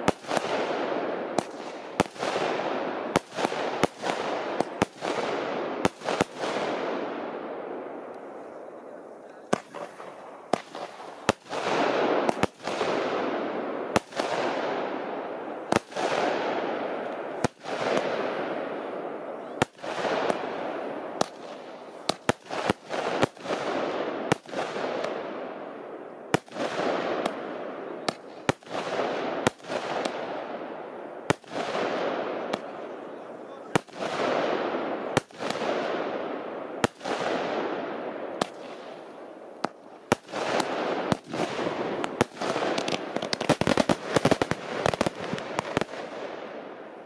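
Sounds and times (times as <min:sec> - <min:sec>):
fireworks hissing crackle: 0:00.0 - 0:07.0, 0:07.8 - 0:14.8, 0:15.4 - 0:25.2, 0:38.4 - 0:46.6
fireworks bangs: 0:00.0 - 0:47.0.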